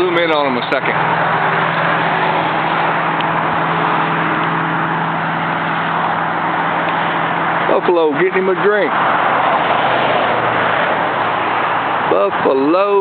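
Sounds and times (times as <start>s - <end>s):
highway traffic noise: 0.0s - 13.0s
low engine hum: 0.0s - 13.0s.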